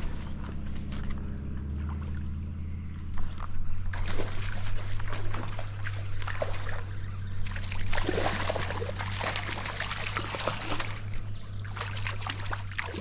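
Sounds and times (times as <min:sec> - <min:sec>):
steady low hum: 0:00.0 - 0:13.0
stream water splashing and trickling: 0:00.0 - 0:13.0
sharper water splashes: 0:03.1 - 0:13.0.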